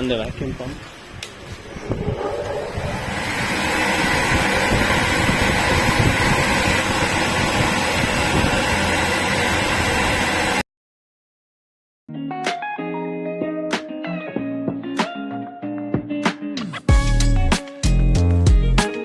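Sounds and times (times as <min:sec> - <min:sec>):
vacuum pump running: 0:01.2 - 0:10.6.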